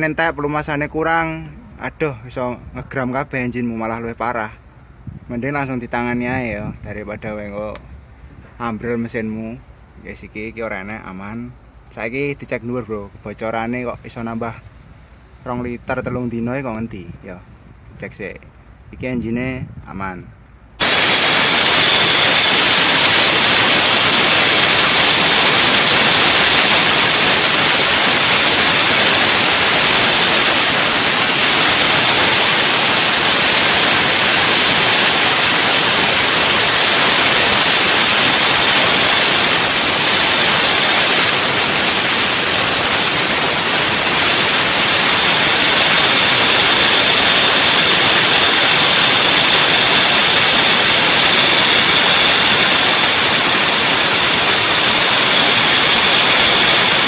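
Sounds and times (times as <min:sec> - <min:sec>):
high engine whine: 0:20.3 - 0:57.0
diesel engine running at high revs: 0:20.8 - 0:57.0.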